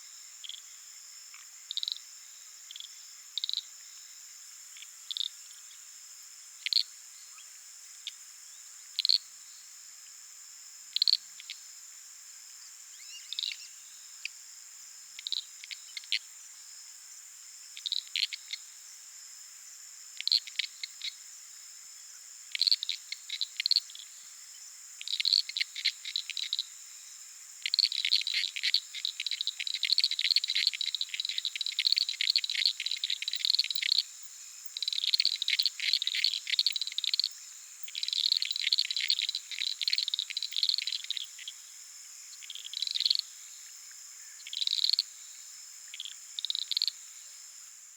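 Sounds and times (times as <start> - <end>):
frogs clicking: 22.6 - 23.9, 25.0 - 26.6, 27.6 - 41.5, 42.4 - 43.2, 44.5 - 45.0, 45.9 - 47.0.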